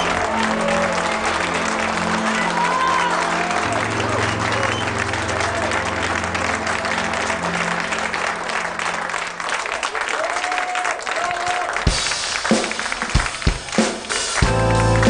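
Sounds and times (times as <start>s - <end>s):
audience applauding: 0.0s - 15.0s
live band chord: 14.2s - 15.0s.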